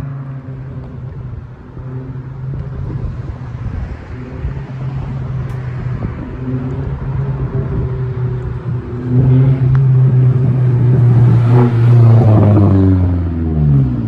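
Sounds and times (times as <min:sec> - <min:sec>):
car engine droning: 0:00.0 - 0:14.0.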